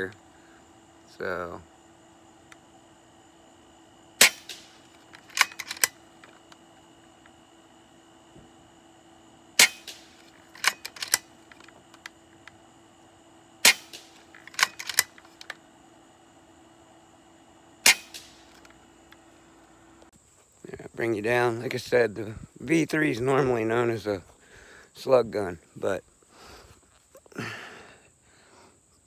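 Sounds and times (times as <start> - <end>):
air rifle shots: 4.2 - 6.0, 9.6 - 11.4, 13.6 - 15.4, 17.8 - 18.6
rifle action clicks: 4.2 - 6.6, 9.6 - 12.1, 13.6 - 15.6, 17.9 - 18.8.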